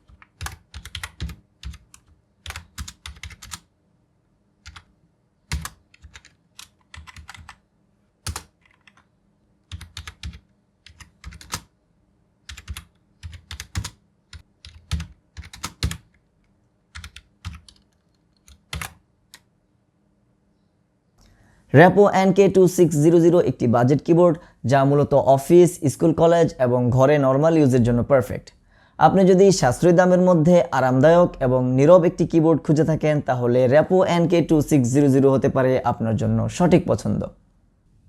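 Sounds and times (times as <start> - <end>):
keyboard typing: 0.0 - 3.7, 4.6 - 4.9, 5.5 - 7.6, 8.2 - 11.7, 12.5 - 19.5.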